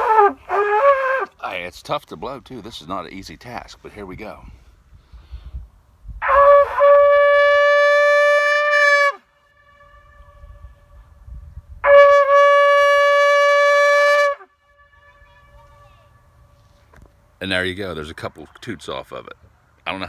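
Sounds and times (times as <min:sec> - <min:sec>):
horn blasts: 0:06.2 - 0:16.8.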